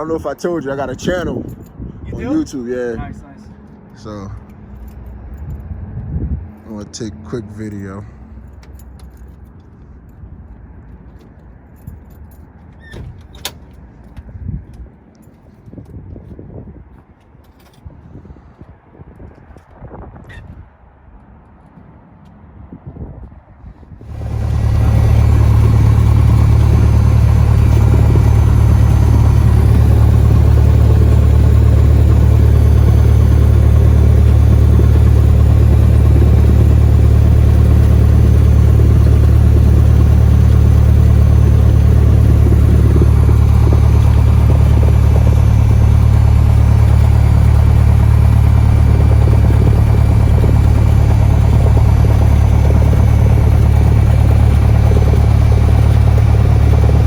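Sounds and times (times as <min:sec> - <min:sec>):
propeller plane engine humming: 0:24.0 - 0:57.0.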